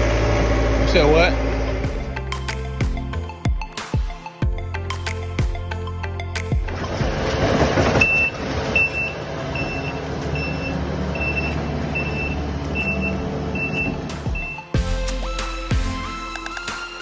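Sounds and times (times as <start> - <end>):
heavy machine engine running: 0.0 - 2.3, 6.7 - 14.8
reversing alarm beeping: 8.0 - 15.6.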